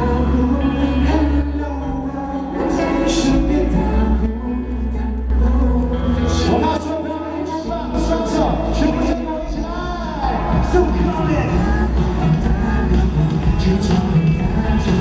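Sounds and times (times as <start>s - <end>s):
live pop music: 0.0s - 15.0s
person singing: 0.0s - 15.0s.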